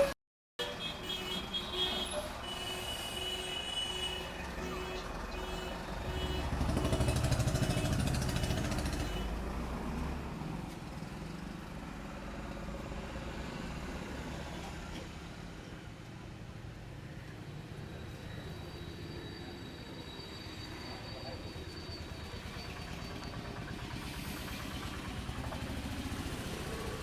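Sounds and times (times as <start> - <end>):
street traffic noise: 0.0 - 27.0
vehicle engine passing: 6.0 - 10.4, 22.2 - 27.0.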